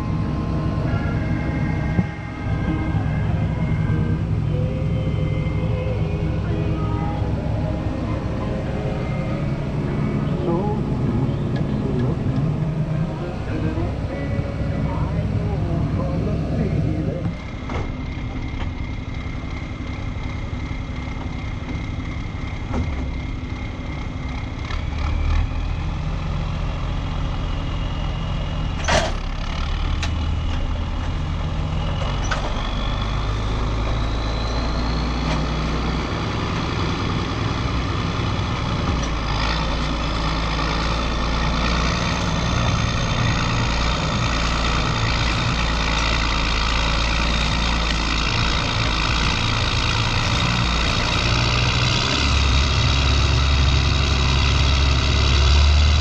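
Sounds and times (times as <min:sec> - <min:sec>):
rising whine: 0:00.0 - 0:18.8, 0:29.9 - 0:55.5
diesel engine under load: 0:00.0 - 0:56.0.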